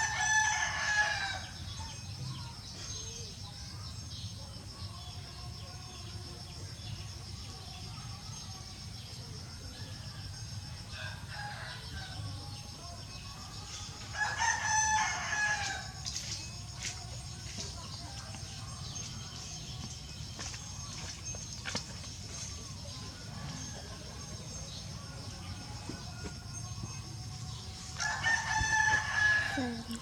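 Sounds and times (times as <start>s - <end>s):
rooster crowing: 0.0s - 1.6s, 14.1s - 16.0s, 28.0s - 29.9s.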